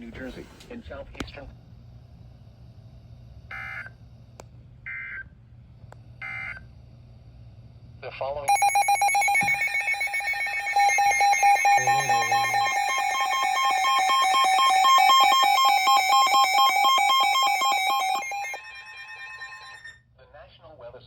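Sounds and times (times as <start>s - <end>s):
two-pitch alert tone pulsing: 8.5s - 19.9s.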